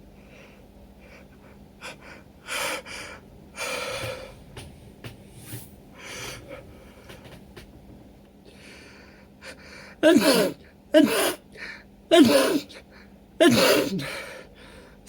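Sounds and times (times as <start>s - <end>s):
person gasping breaths: 0.2s - 7.3s, 8.5s - 15.0s.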